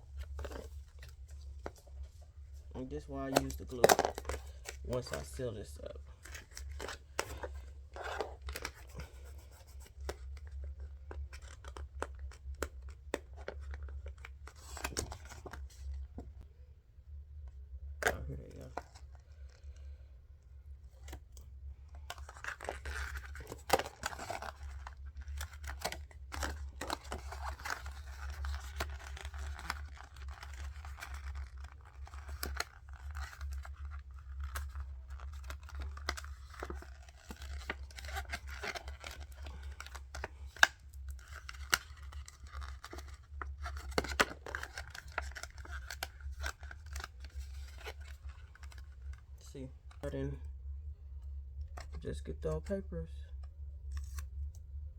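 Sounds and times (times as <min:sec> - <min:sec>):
plastic bag and paper crinkling: 0:00.1 - 0:09.3, 0:22.1 - 0:50.3
low hum: 0:33.0 - 0:54.9.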